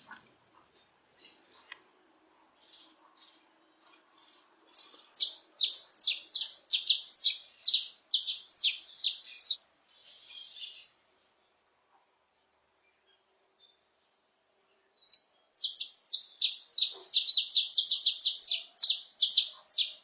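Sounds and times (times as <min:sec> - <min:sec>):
soft bird twitter: 0:00.4 - 0:11.4, 0:12.9 - 0:20.0
finch singing: 0:02.6 - 0:11.0, 0:15.1 - 0:20.0.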